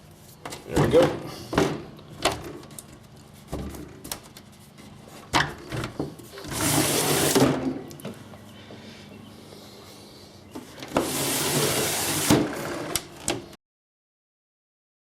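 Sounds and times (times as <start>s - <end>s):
rushing scrape: 6.5s - 7.4s, 11.0s - 12.4s.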